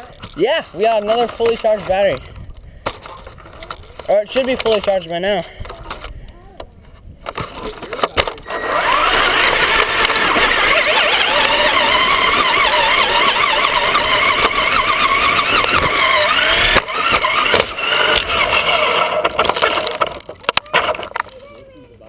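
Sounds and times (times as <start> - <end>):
rough tyre noise: 7.2 - 21.4
rc car motor whining: 7.4 - 21.3.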